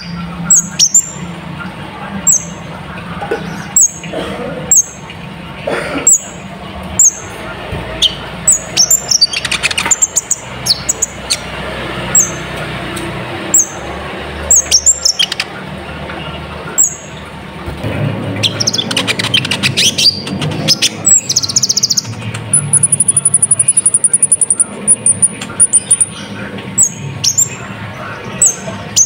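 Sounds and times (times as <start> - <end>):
bird chirping and trilling: 0.0 - 1.3, 2.2 - 2.7, 3.4 - 4.1, 4.7 - 5.2, 6.1 - 6.4, 7.0 - 7.3, 7.9 - 12.5, 13.5 - 15.6, 16.3 - 17.3, 18.4 - 29.0.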